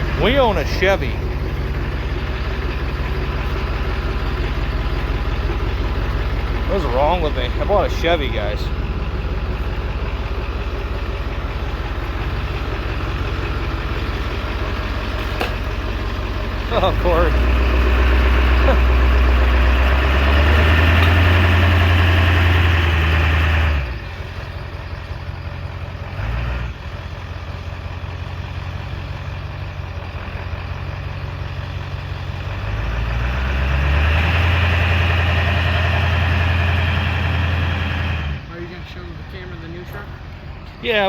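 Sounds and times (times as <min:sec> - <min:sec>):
pickup truck engine running: 0:00.0 - 0:41.0.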